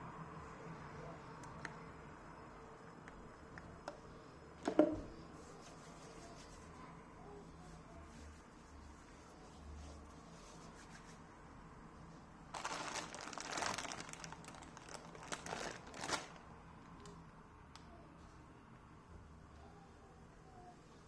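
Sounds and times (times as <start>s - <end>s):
crinkling rustling: 12.5s - 17.0s.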